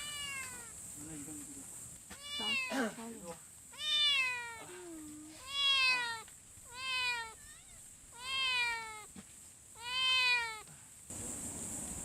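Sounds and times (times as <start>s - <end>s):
cat meowing: 0.0s - 0.7s, 2.1s - 2.8s, 3.7s - 9.1s, 9.8s - 10.7s.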